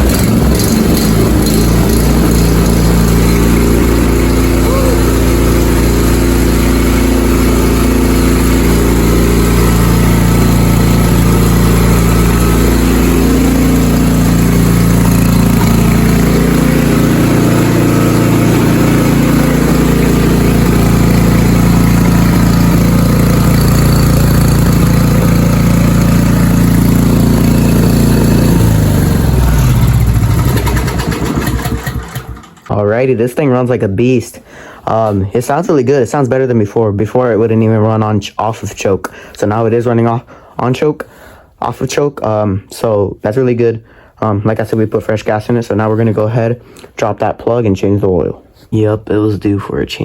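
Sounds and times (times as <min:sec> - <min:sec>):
snowblower engine running: 0:00.0 - 0:32.7
engine winding down: 0:00.0 - 0:32.8.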